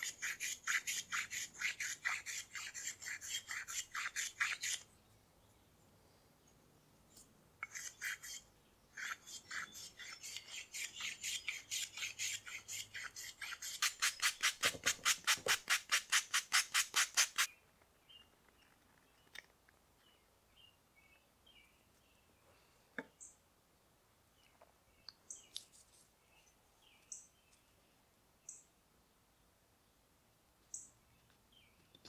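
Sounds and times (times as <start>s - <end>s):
rasp scraping wood: 0.0s - 4.8s, 7.6s - 8.4s, 9.0s - 17.5s.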